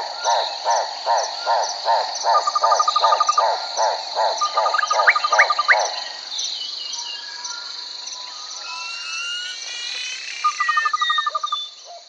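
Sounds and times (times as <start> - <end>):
high-pitched insect chorus: 0.0 - 12.0
birds whistling gliding notes: 8.3 - 11.8.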